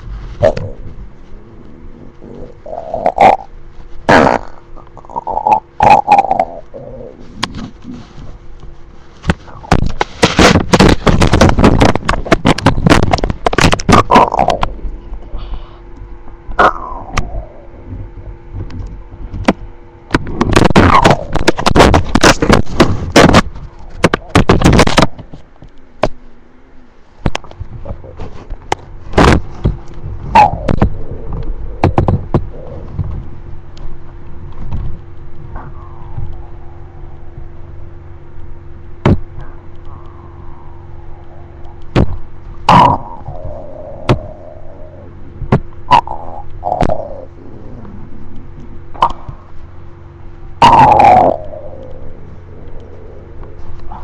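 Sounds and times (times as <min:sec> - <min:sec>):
faint steady hum: 0:00.0 - 0:54.0
stomach growling: 0:00.0 - 0:54.0
sharp thumps and knocks: 0:09.2 - 0:15.0, 0:16.5 - 0:26.2, 0:27.2 - 0:36.4, 0:39.0 - 0:39.5, 0:41.6 - 0:44.5.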